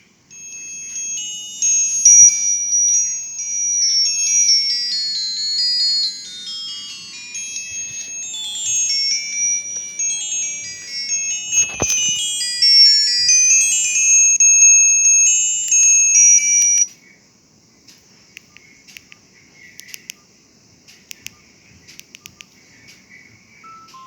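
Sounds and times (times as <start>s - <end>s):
phone ringtone melody: 0.3s - 16.3s
small clicks: 10.9s - 12.4s.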